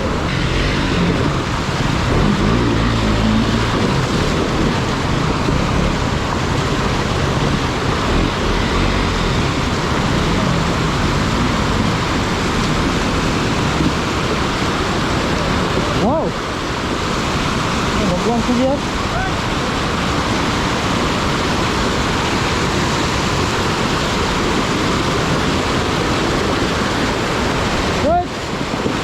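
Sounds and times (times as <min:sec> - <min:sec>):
motorcycle engine revving: 0:00.0 - 0:19.1
stream rushing: 0:00.0 - 0:29.0.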